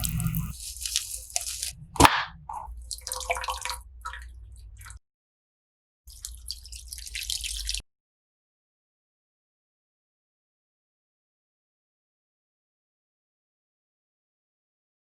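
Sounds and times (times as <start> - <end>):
liquid dripping and splashing: 0.0 - 5.0, 6.1 - 7.8.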